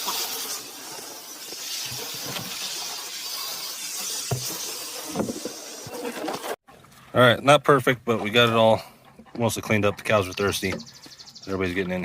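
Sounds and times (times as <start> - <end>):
water spraying from a hose: 0.0 - 6.6.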